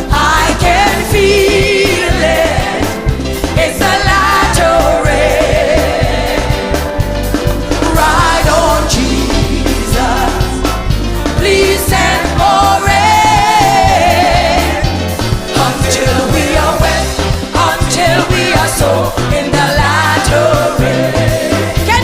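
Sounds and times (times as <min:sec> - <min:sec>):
choir singing: 0:00.0 - 0:07.0, 0:07.7 - 0:22.0
person singing gospel song: 0:00.0 - 0:07.0, 0:07.7 - 0:22.0
band with steady beat: 0:00.0 - 0:22.0.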